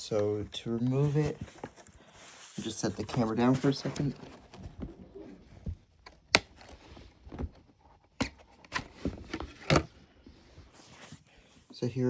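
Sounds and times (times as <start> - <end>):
packaging rustling: 0.8 - 5.2.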